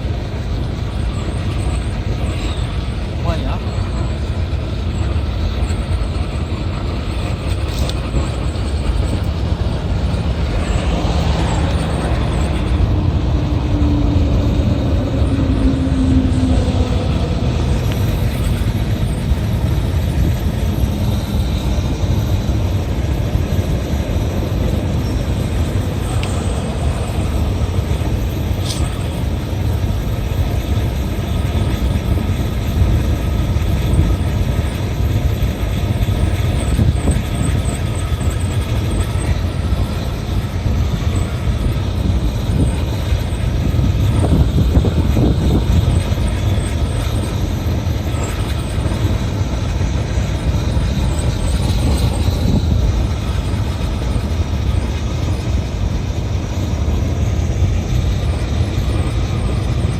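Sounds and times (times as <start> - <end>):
low engine rumble: 0.0 - 59.9.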